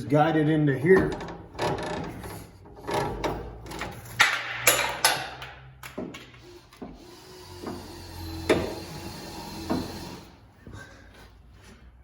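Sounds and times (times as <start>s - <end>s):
metal parts and tools clanking: 0.9s - 6.0s.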